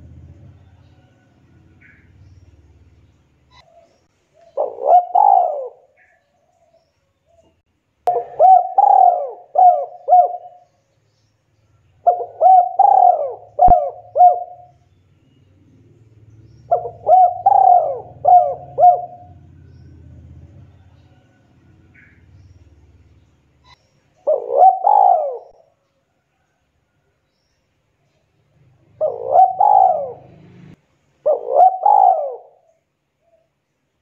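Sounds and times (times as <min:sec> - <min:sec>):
dove cooing: 0:03.5 - 0:06.2, 0:08.1 - 0:10.7, 0:12.0 - 0:14.8, 0:16.6 - 0:22.4, 0:23.6 - 0:25.7, 0:28.8 - 0:33.5.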